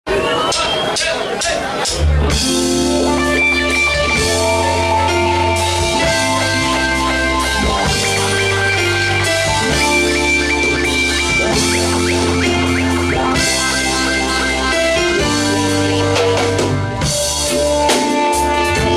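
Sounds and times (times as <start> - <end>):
live band music: 0.1 - 18.9
guitar: 1.6 - 18.9.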